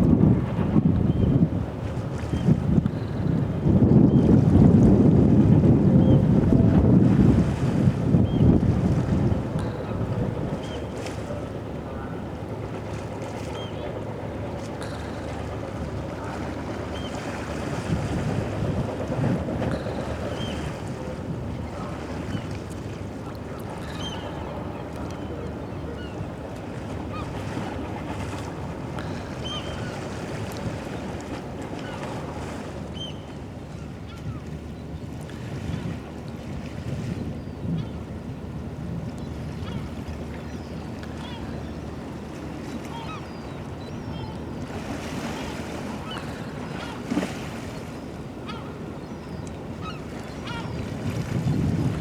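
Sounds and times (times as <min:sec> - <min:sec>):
wind rumble: 0:00.0 - 0:10.8, 0:50.8 - 0:52.0
wind on microphone: 0:00.0 - 0:11.3, 0:14.9 - 0:22.8, 0:35.2 - 0:43.1, 0:49.6 - 0:52.0
passing cargo ship: 0:00.0 - 0:52.0
river water: 0:00.0 - 0:52.0.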